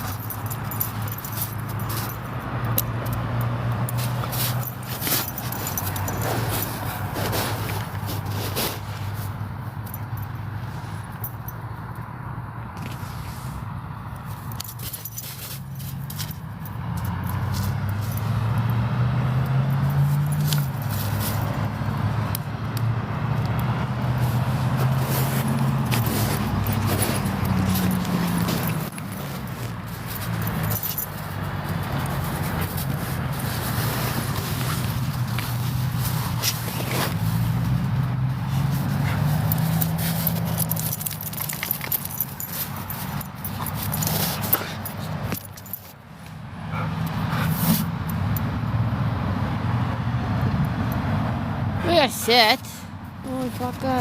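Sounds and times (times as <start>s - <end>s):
light clicks and jingles: 0.0s - 12.1s, 14.1s - 22.8s, 23.4s - 48.4s
vehicle engine humming: 0.0s - 54.0s.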